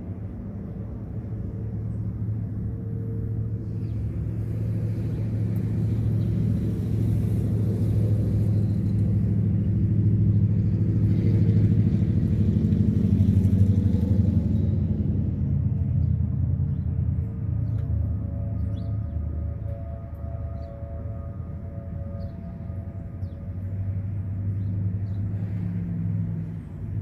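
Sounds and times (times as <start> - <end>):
vehicle engine passing by: 3.9 - 19.4, 22.8 - 27.0.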